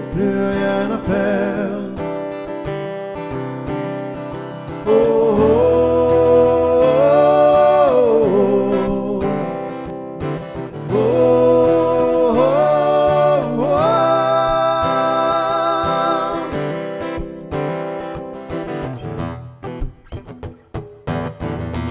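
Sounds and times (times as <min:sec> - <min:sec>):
acoustic guitar strumming: 0:00.0 - 0:21.9
person singing wordless notes: 0:04.8 - 0:09.8, 0:10.9 - 0:17.0.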